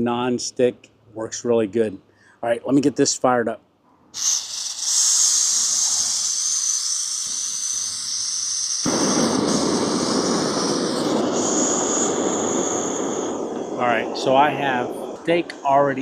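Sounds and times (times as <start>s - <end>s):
gas stove hissing: 4.1s - 16.0s
loud rushing noise: 8.9s - 16.0s.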